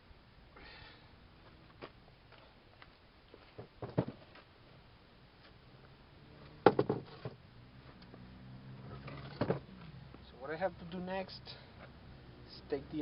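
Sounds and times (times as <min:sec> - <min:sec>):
vise parts knocking and clattering: 0:06.6 - 0:07.4, 0:09.0 - 0:09.7.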